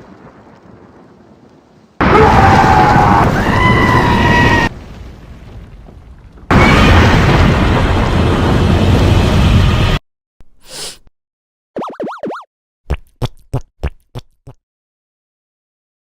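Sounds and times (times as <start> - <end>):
loud harsh sneezes: 10.6 - 11.1.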